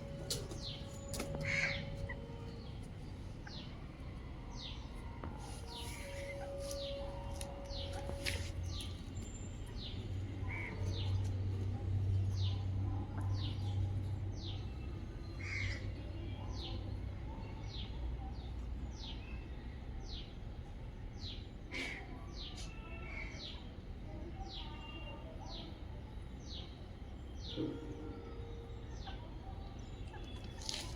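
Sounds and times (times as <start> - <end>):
steady low hum: 0.0 - 15.3
bird chirps: 5.5 - 11.2.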